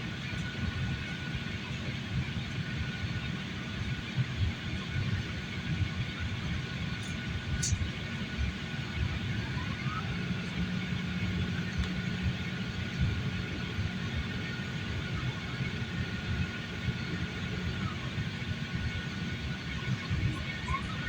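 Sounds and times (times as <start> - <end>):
airliner engine rumble: 0.0 - 21.0
faint steady whine: 0.0 - 21.0.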